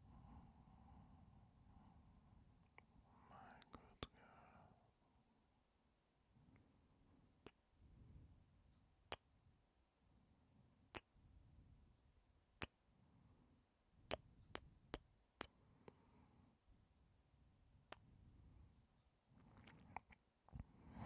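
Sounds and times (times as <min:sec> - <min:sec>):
faint breathing: 0:03.0 - 0:04.8, 0:20.6 - 0:21.0.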